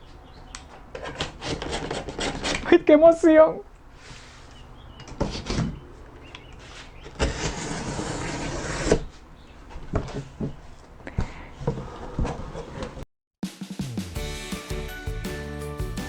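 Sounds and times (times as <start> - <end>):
cardboard scraping slide: 6.6 - 9.2, 11.6 - 13.0.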